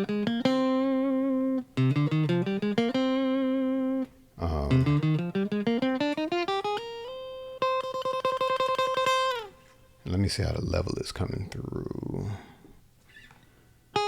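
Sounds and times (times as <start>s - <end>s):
noisy guitar strum: 0.0s - 9.6s
guitar playing single notes: 0.0s - 11.0s, 13.1s - 14.0s.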